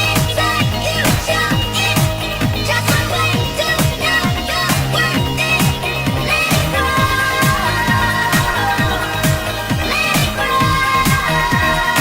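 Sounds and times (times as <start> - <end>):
held bass line: 0.0 - 12.0
pop dance music: 0.0 - 12.0
steady kick drum: 0.0 - 12.0.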